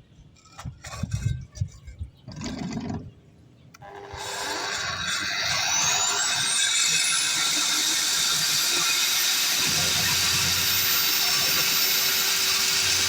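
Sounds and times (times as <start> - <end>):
core drill motor whine: 3.8 - 13.0.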